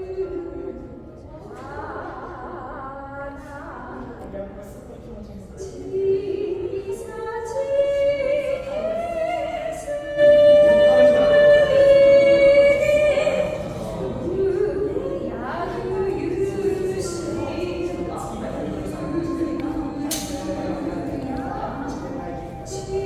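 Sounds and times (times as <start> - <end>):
high voice singing: 6.8 - 23.0
lyre playing: 9.9 - 23.0.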